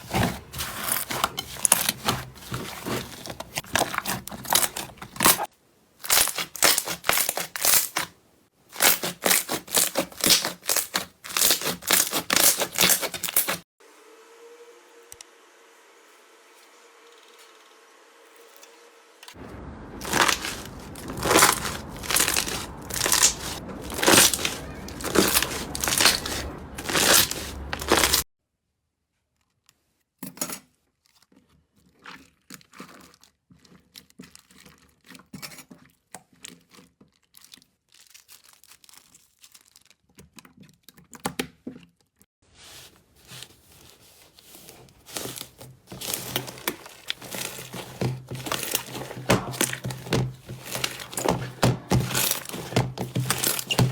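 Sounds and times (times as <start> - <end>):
slime crackling and tearing: 0.0 - 8.1, 8.7 - 13.6, 19.5 - 28.2, 36.5 - 40.2, 44.5 - 53.9.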